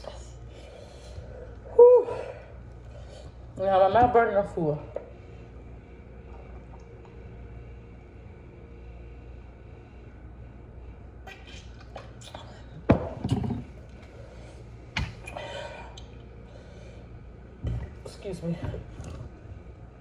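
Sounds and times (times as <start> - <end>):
steady low hum: 0.0 - 20.0
mouth clicks and smacks eating: 11.3 - 12.5.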